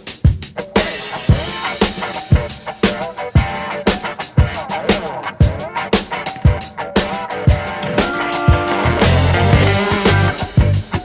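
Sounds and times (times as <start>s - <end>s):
background music with drum beat: 0.0s - 11.0s
bass drum: 7.5s - 11.0s.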